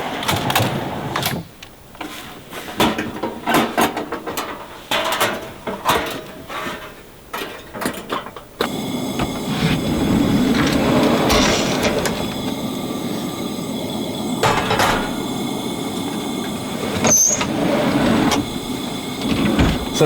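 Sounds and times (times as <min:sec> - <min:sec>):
kitchen gear clicks and knocks: 0:00.2 - 0:09.4, 0:14.4 - 0:15.3.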